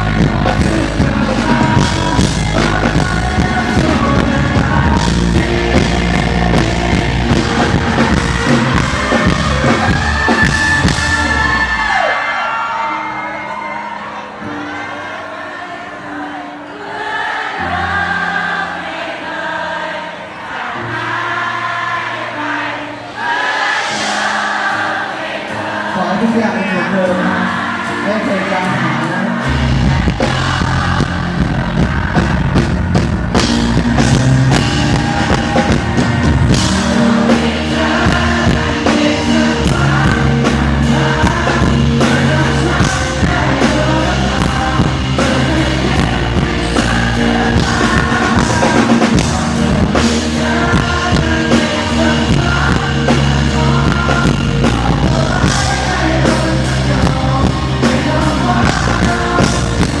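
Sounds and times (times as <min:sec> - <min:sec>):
heavy bass: 0:00.0 - 0:12.1, 0:28.7 - 1:00.0
pop-rock band playing live: 0:00.0 - 0:15.0, 0:23.2 - 1:00.0.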